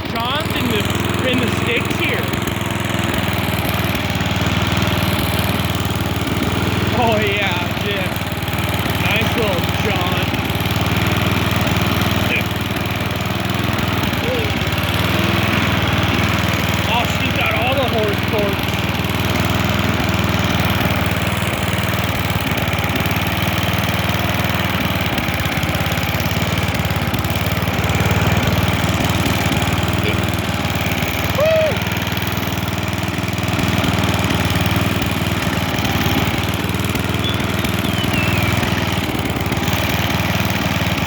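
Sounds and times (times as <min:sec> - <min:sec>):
lawnmower engine running: 0:00.0 - 0:41.0
rising and falling chirp: 0:37.2 - 0:38.8.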